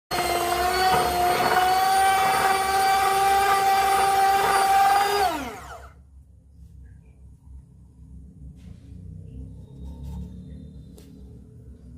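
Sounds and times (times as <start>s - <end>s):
drill mixer whining: 0.1s - 6.0s.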